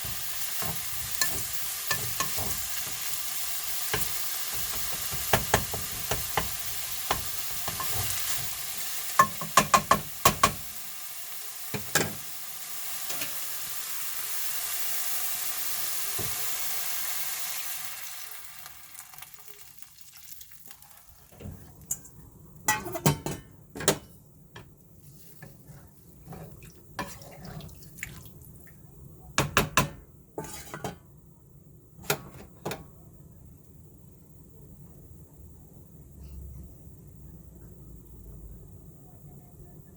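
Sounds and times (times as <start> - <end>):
food sizzling in a frying pan: 0.0 - 28.6
utensil clacking against pan: 9.2 - 10.6
utensils and dishes knocking: 9.2 - 10.6.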